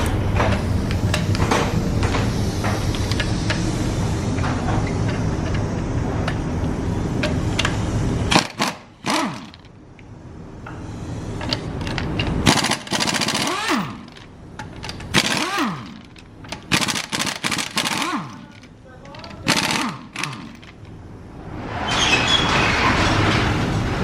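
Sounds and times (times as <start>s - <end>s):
low running noise: 0.0s - 24.0s
impact wrench rattling bursts: 7.1s - 9.9s, 11.3s - 21.0s.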